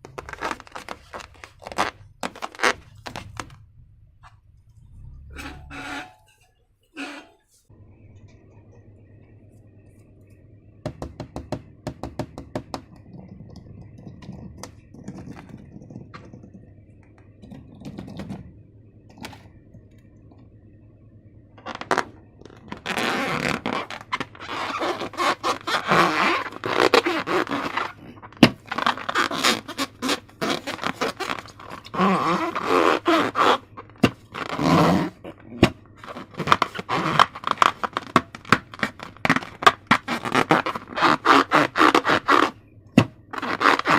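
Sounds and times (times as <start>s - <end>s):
slime squelching and scraping: 0.0s - 3.6s, 21.6s - 42.6s, 43.2s - 43.9s.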